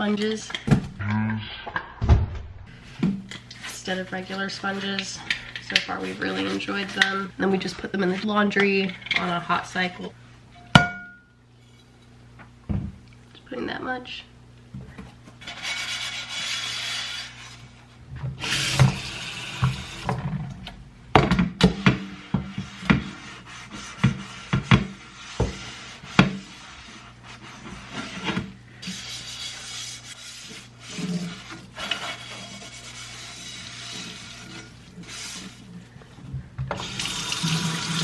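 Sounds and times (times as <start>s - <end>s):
sponge scrubbing a surface: 5.9s - 8.2s, 15.4s - 17.8s, 22.2s - 35.8s.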